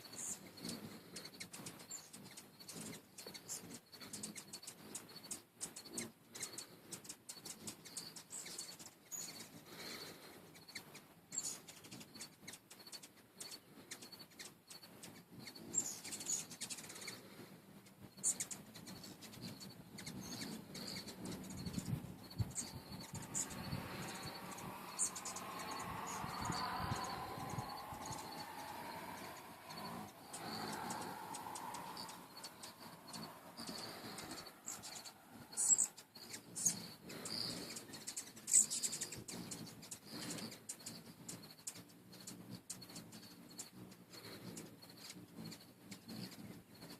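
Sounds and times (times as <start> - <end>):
hummingbird wings buzzing: 0.0 - 46.9
hummingbirds chirping: 0.0 - 46.9
low hum: 18.4 - 36.8.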